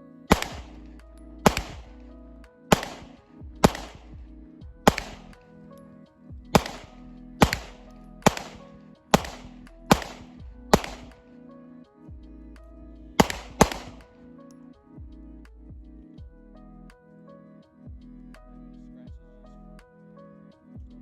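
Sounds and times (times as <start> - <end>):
background music: 0.0 - 21.0
pistol shots: 0.3 - 0.8, 1.4 - 2.0, 2.7 - 4.2, 4.9 - 5.4, 6.6 - 11.2, 13.2 - 14.1.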